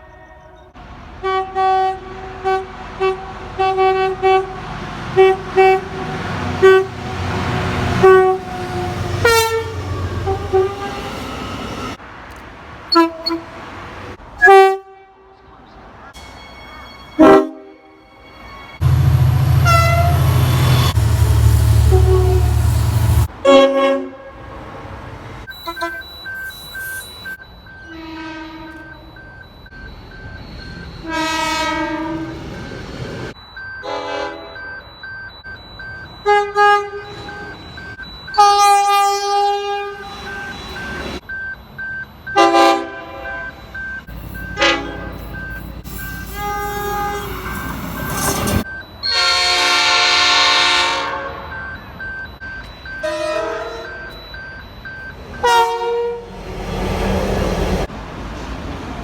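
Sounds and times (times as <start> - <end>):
train horn blasts: 1.2 - 4.6, 5.2 - 11.3, 14.4 - 15.3, 17.1 - 24.6, 27.9 - 28.8, 31.0 - 32.4, 33.8 - 34.6, 42.4 - 43.5, 44.5 - 45.3, 46.1 - 51.5, 53.0 - 54.0, 55.4 - 56.4
loud low rumble: 18.8 - 23.3.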